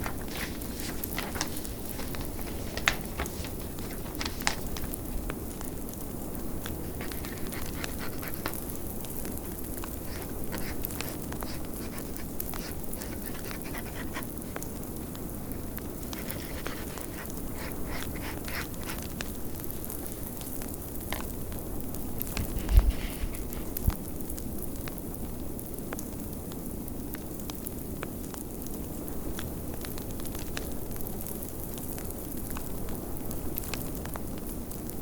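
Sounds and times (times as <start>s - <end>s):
wood fire crackling: 0.0s - 21.4s.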